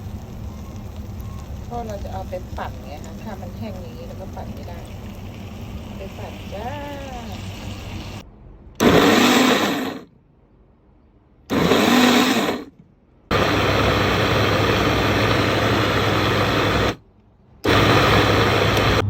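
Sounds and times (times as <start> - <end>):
electric blender grinding: 3.0 - 8.2, 8.8 - 10.1, 11.5 - 12.7, 13.3 - 17.0, 17.7 - 19.0.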